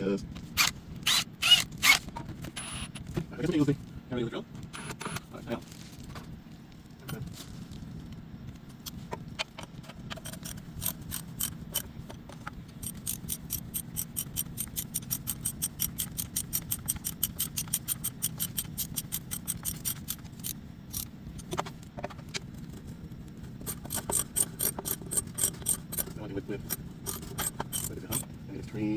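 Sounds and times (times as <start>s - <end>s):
steady low hum: 0.0s - 28.9s
hand tool clicking on metal: 10.1s - 11.9s, 12.8s - 21.5s, 23.6s - 28.3s.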